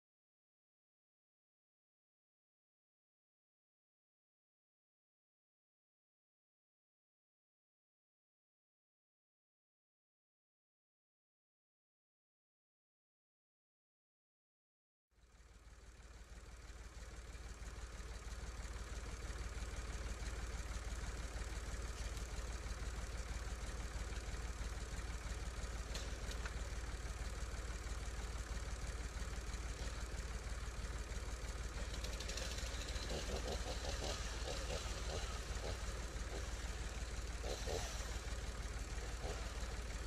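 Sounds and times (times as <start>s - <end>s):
tractor engine idling: 15.2s - 40.0s.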